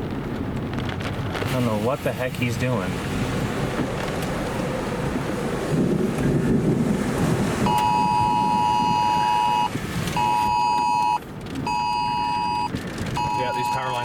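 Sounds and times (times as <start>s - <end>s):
low wind rumble: 0.0s - 14.0s
phone emergency alert beeps: 7.7s - 14.0s.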